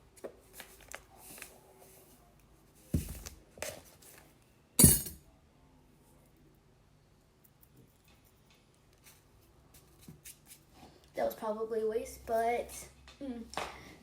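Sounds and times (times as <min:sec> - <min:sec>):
kitchen things clinking and knocking: 0:04.8 - 0:05.2.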